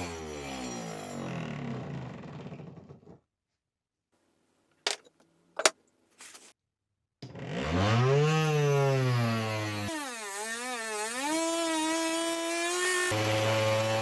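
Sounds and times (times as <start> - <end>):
saw winding down: 0.0 - 3.1, 7.3 - 14.0
table saw motor whine: 7.3 - 14.0.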